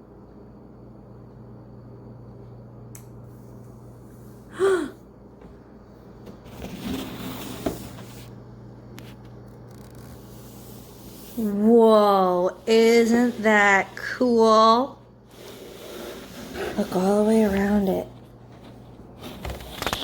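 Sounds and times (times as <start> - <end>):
low room hum: 0.0 - 20.0.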